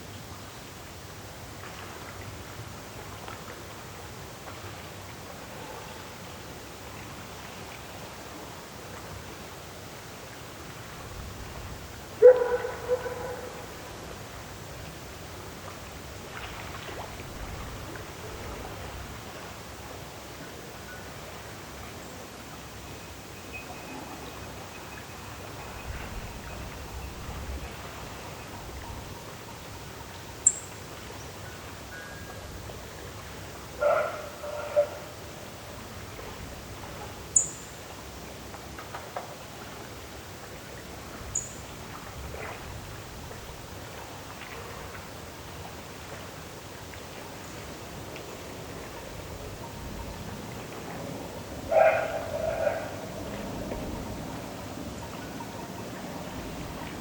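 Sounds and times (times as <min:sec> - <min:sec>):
soft outdoor hiss: 0:00.0 - 0:57.0
dog yelping: 0:12.2 - 0:13.5, 0:51.7 - 0:53.0.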